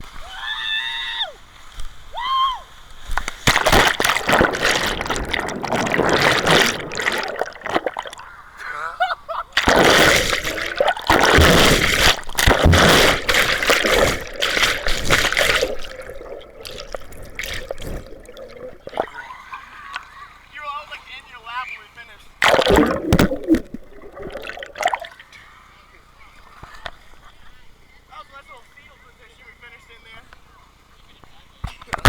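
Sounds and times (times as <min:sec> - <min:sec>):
water pouring and splashing: 0:03.0 - 0:08.3, 0:09.6 - 0:19.2, 0:22.4 - 0:25.2
water gurgling: 0:03.2 - 0:08.7, 0:09.5 - 0:20.0, 0:22.4 - 0:25.4.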